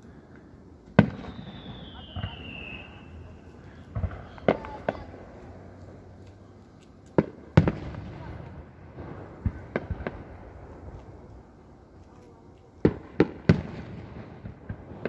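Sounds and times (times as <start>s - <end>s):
firework bangs: 0.9s - 6.1s, 7.1s - 11.6s, 12.8s - 15.0s
high falling firework whistle: 1.0s - 5.0s.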